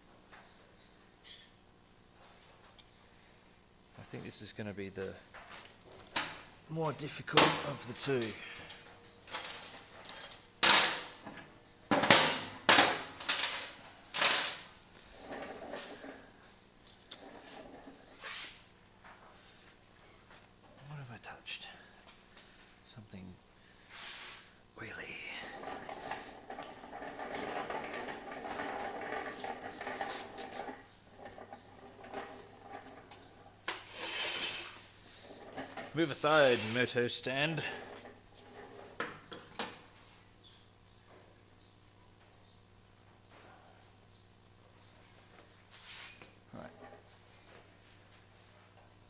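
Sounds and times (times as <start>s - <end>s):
rattling and handling noises: 5.3s - 16.2s, 25.5s - 36.8s.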